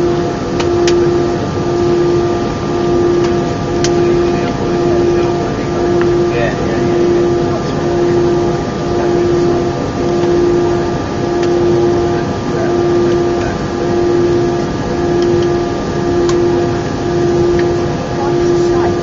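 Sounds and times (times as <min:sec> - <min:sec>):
aircraft cabin engine rumble: 0:00.0 - 0:19.0
droning hum: 0:00.0 - 0:19.0.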